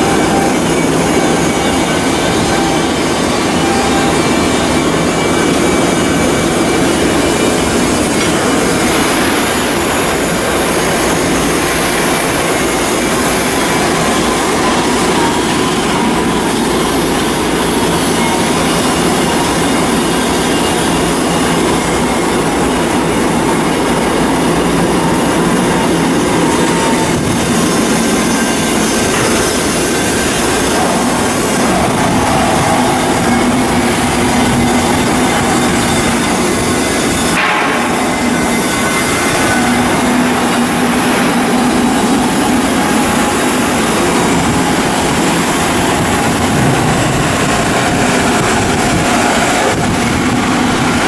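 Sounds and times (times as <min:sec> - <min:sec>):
faint wavering high tone: 0:00.0 - 0:50.9
loud mechanical shipyard noise: 0:00.0 - 0:51.0.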